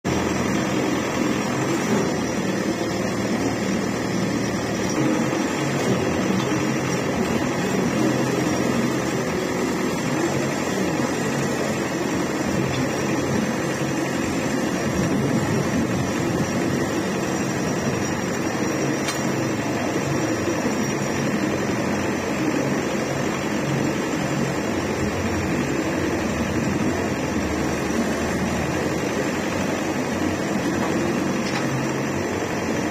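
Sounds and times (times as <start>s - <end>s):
drilling rig engine running: 0.1s - 32.9s.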